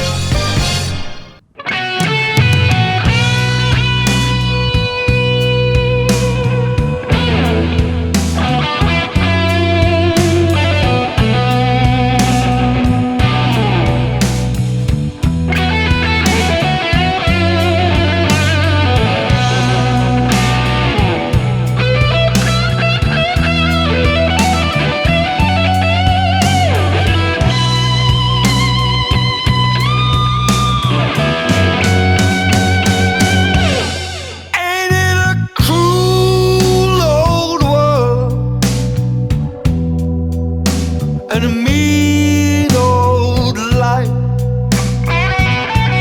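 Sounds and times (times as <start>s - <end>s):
bass line: 0.0s - 1.4s, 2.2s - 46.0s
drum hits: 0.0s - 1.4s, 7.1s - 34.6s
guitar: 0.0s - 46.0s.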